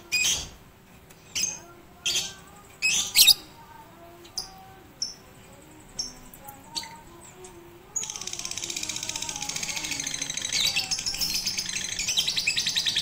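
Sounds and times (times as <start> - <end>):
lovebird chirping and chattering: 1.3 - 3.5, 8.0 - 13.0.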